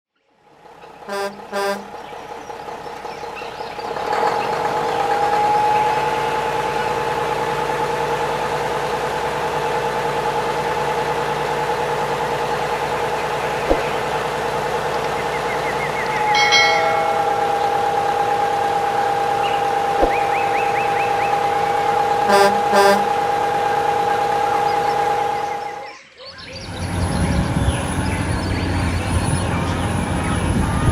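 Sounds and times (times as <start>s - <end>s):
engine-like drone: 0.2s - 30.9s
vehicle horn honking: 1.1s - 1.9s, 22.1s - 23.3s.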